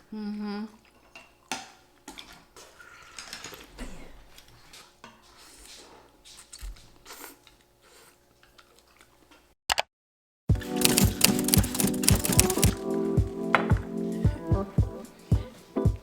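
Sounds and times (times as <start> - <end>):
chewing: 6.4 - 9.4
music with a beat: 10.5 - 16.0
utensils clicking on bowl: 10.7 - 12.8.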